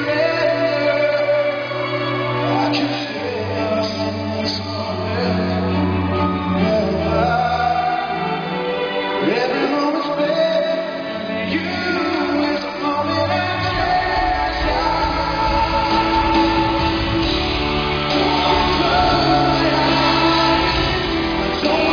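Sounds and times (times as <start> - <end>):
live band playing ballad: 0.0 - 21.9
man singing: 0.0 - 21.9.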